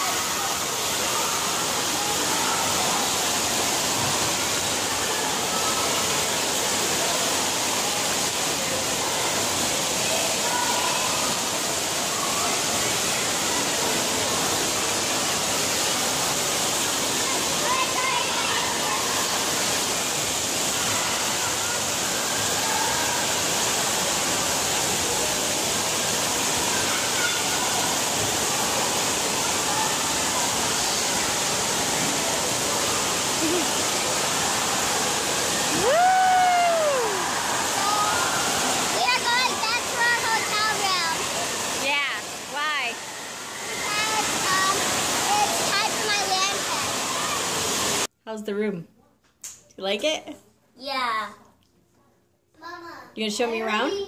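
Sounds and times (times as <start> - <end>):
water rushing and splashing: 0.0 - 48.1.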